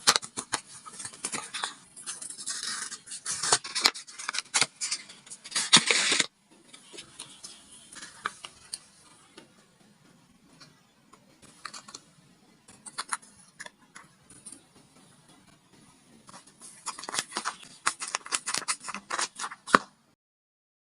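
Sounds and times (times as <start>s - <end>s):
paper crinkling and rustling: 0.0s - 9.2s, 12.7s - 14.6s, 16.2s - 20.0s.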